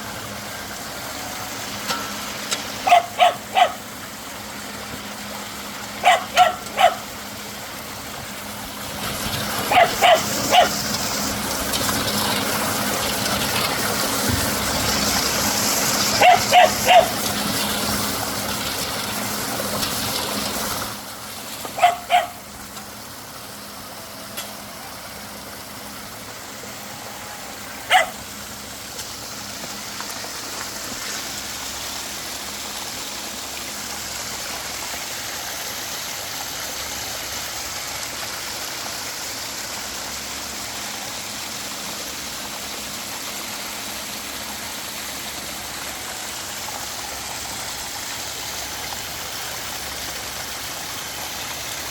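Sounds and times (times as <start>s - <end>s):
water pouring over waterfall: 0.0s - 51.9s
dog barking: 2.8s - 3.8s, 6.0s - 7.1s, 9.7s - 10.8s, 16.2s - 17.2s, 21.8s - 22.4s, 27.9s - 28.2s.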